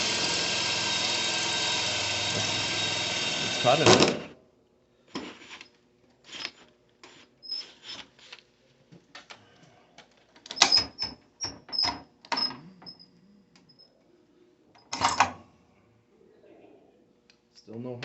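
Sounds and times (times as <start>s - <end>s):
thin high squeak: 7.4s - 8.1s.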